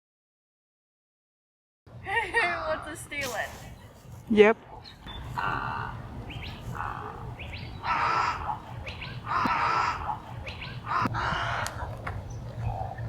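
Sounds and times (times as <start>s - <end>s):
harsh rasping bird calls: 4.7s - 13.0s.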